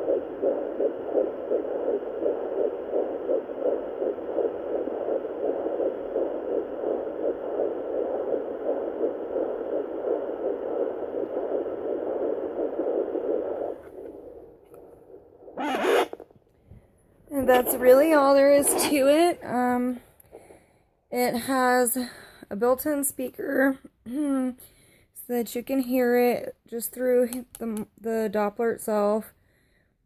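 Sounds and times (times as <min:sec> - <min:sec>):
fetal heartbeat on doppler: 0:00.0 - 0:16.2, 0:17.3 - 0:20.0.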